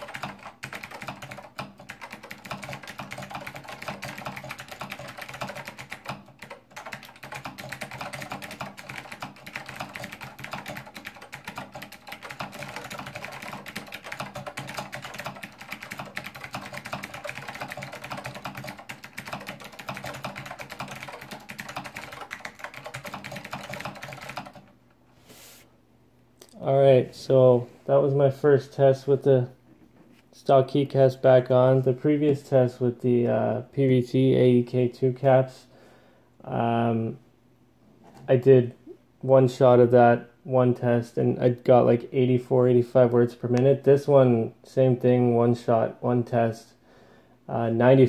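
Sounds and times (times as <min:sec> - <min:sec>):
fast typing on clicky keyboard: 0:00.0 - 0:24.7.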